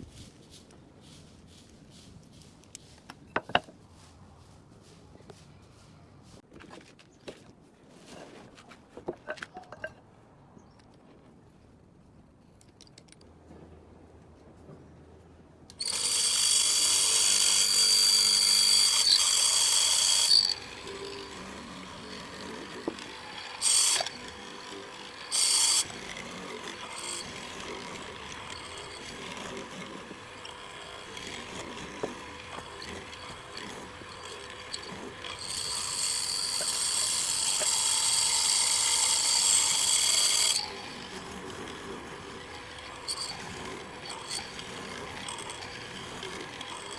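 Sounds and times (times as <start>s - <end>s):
electric power tool whining: 15.8s - 46.9s.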